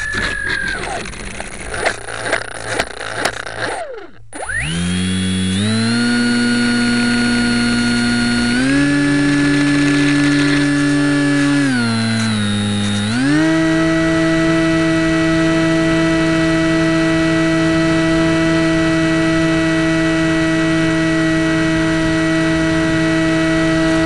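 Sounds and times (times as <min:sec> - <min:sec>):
rattling: 0:00.0 - 0:14.9
electric motor whining: 0:00.0 - 0:24.0.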